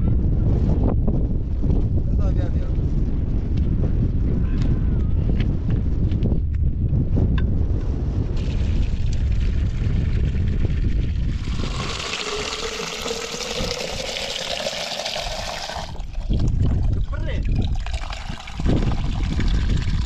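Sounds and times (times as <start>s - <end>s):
wind on microphone: 0.0s - 20.0s
water pouring into container: 8.4s - 20.0s.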